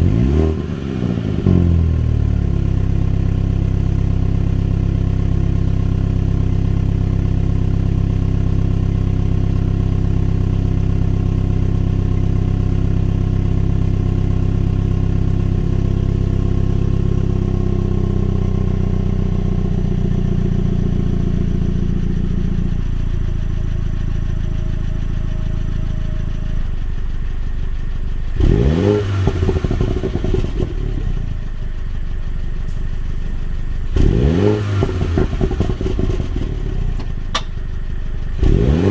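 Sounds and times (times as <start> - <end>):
car engine revving: 0.0 - 2.2, 27.6 - 38.9
car engine idling: 0.0 - 38.9.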